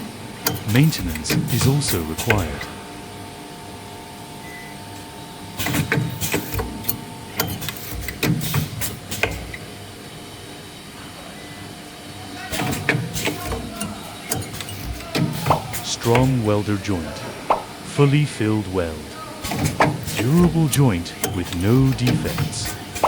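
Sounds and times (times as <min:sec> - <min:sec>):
machine humming: 0:00.0 - 0:09.6, 0:12.6 - 0:23.0
sharp mechanical clacks and knocks: 0:00.4 - 0:02.7, 0:05.6 - 0:09.6, 0:12.5 - 0:16.6, 0:19.4 - 0:23.0.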